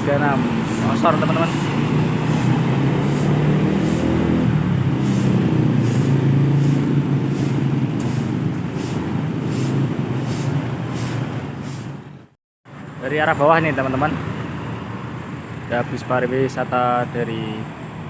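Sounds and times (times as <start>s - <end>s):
bus diesel engine droning: 0.0s - 12.4s.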